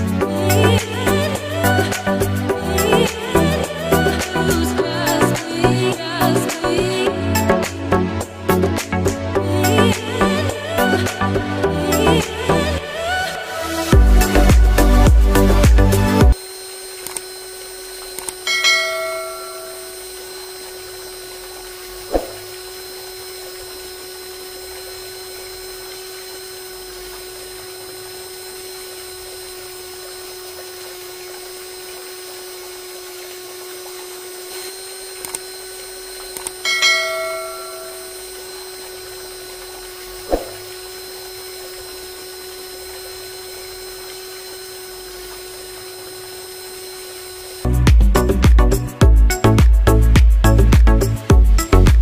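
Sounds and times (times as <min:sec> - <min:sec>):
small motor whining: 0:00.0 - 0:51.9
short clicks: 0:17.0 - 0:17.3, 0:35.1 - 0:35.5
metallic ding: 0:18.5 - 0:20.0, 0:36.6 - 0:38.2.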